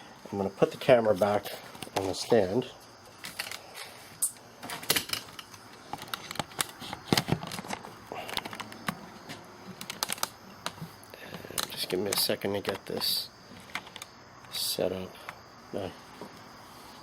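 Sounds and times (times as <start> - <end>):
camera being handled: 5.0 - 9.0.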